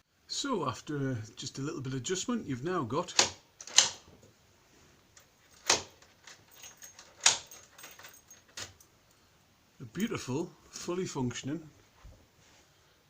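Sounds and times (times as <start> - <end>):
door lock bolt clicking: 3.0 - 4.0, 5.6 - 7.8
key and lock mechanism ticking: 5.6 - 8.8.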